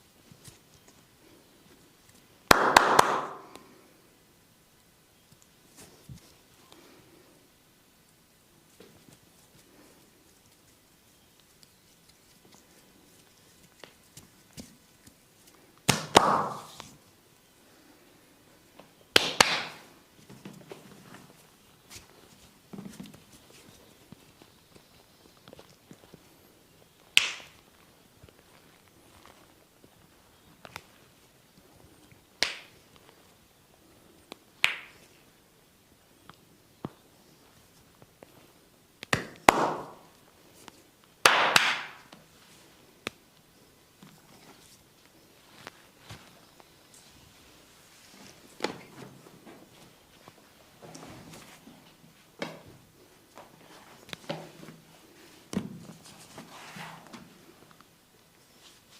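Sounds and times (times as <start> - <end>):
hands slapping skin: 2.5 - 3.6, 15.9 - 16.9, 19.2 - 19.8, 27.2 - 27.6, 32.4 - 32.8, 34.6 - 35.0, 39.0 - 40.1, 41.2 - 42.2.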